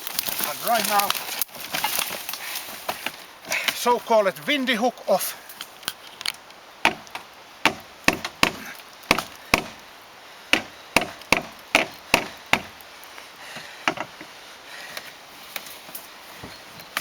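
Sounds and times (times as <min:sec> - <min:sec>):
hand hammer striking: 0:06.8 - 0:09.8, 0:10.5 - 0:12.8.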